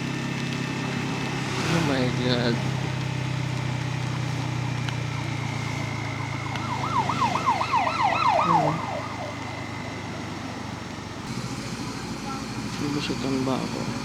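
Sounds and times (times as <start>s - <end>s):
motorcycle engine running: 0.0s - 14.0s
siren yelping: 5.2s - 11.3s.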